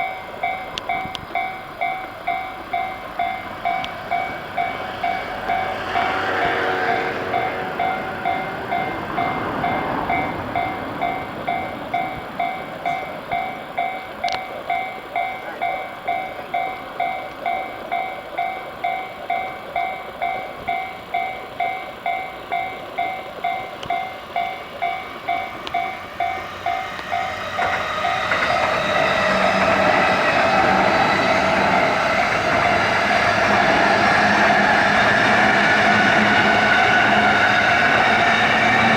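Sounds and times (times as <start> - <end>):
level-crossing warning bell: 0.0 - 38.9
passing train rushing: 0.0 - 38.9.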